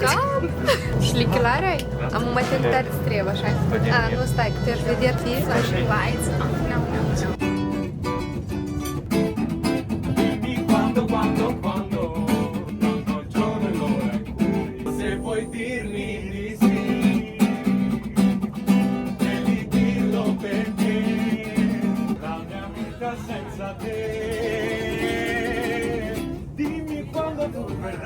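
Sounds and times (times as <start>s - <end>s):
acoustic guitar: 0.0s - 28.0s
person singing: 10.2s - 18.3s.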